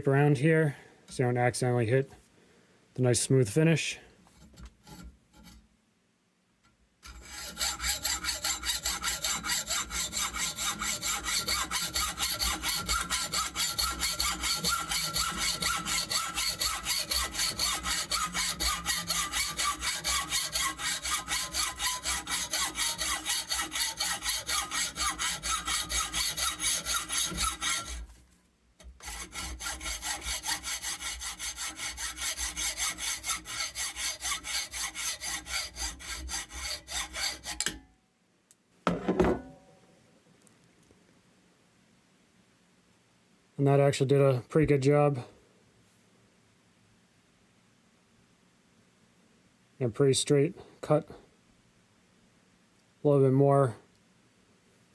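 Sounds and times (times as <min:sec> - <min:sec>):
hacksaw cutting metal tube: 0:04.4 - 0:05.6, 0:07.0 - 0:28.2, 0:28.8 - 0:37.8.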